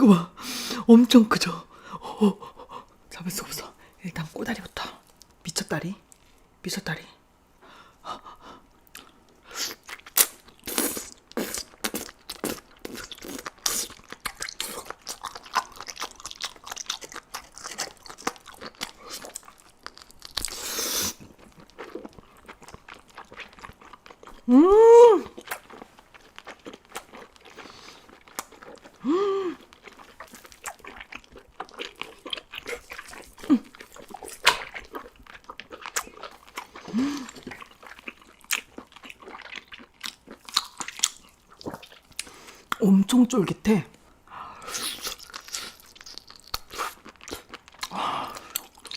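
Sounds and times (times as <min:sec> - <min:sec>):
wet chewing and biting: 0:08.9 - 0:24.5, 0:25.2 - 0:42.8, 0:44.7 - 0:48.9
person humming: 0:24.5 - 0:25.3, 0:29.0 - 0:29.6.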